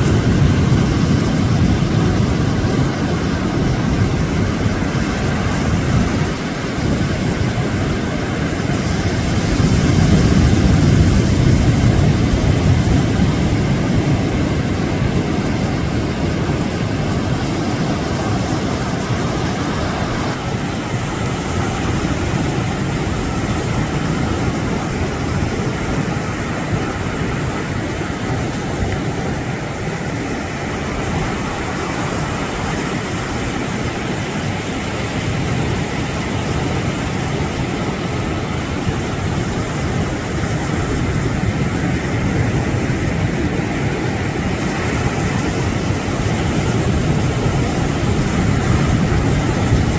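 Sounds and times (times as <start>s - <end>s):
surf and wind rushing: 0.0s - 49.9s.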